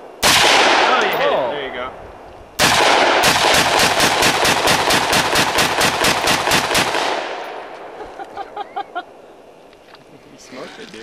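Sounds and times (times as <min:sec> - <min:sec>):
rifle firing rapid shots: 0:00.2 - 0:01.2, 0:02.6 - 0:07.6
gunshot echoes: 0:00.2 - 0:01.4, 0:02.6 - 0:07.7.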